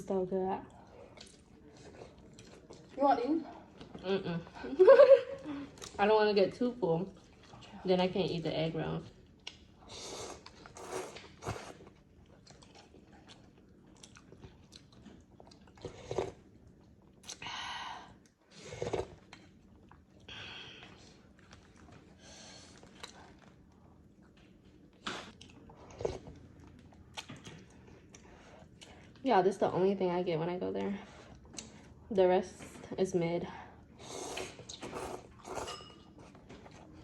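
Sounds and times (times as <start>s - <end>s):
person chewing and crunching: 0.7s - 3.0s, 9.3s - 17.4s, 21.2s - 29.2s, 34.3s - 37.0s.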